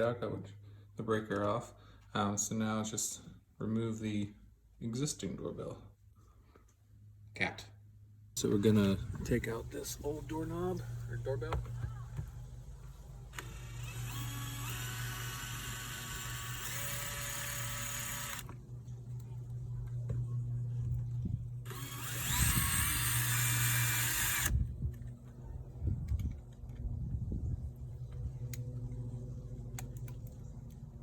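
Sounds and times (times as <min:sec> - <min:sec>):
power drill running: 0:08.5 - 0:24.9.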